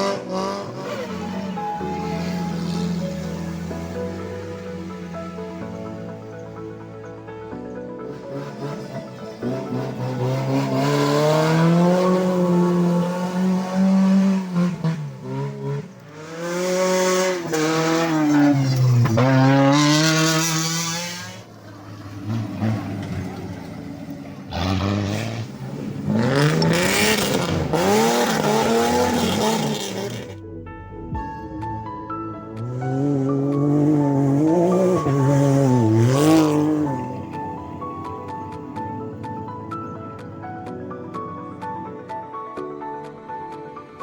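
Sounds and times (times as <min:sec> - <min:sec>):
rally car engine revving: 0:00.0 - 0:06.4, 0:08.0 - 0:30.5, 0:31.4 - 0:42.1.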